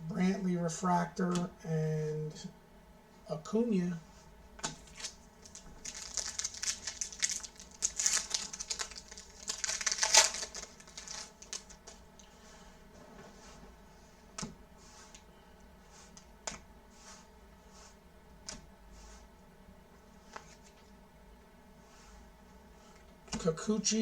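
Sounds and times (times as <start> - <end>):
wrapper crinkling and tearing: 4.8 - 12.0.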